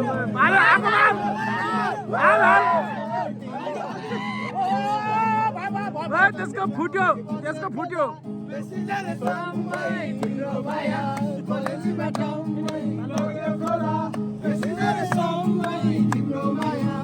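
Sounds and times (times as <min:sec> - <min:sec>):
plucked guitar: 0:00.0 - 0:17.0
person singing: 0:08.7 - 0:17.0.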